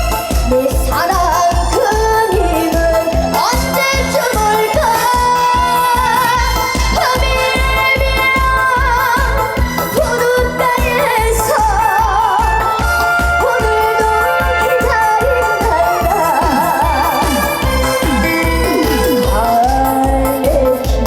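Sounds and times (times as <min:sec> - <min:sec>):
backing track with kick drum: 0:00.0 - 0:21.0
woman singing with vibrato: 0:00.0 - 0:21.0.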